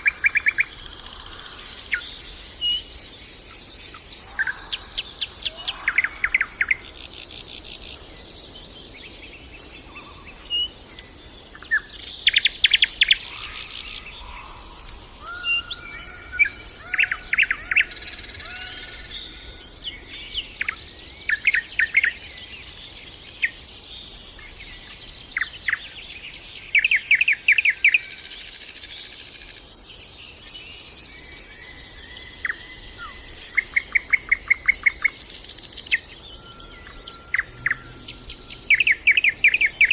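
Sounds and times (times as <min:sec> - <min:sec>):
nightingale singing: 0:00.0 - 0:39.9.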